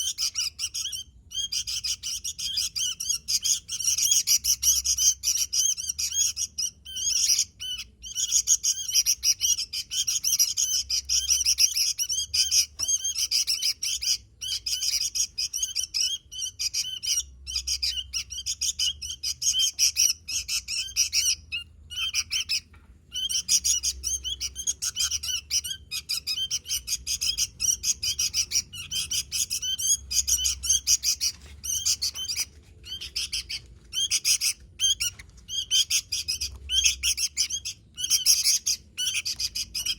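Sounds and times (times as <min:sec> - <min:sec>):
bird singing rapid chirps: 0:00.0 - 0:39.9.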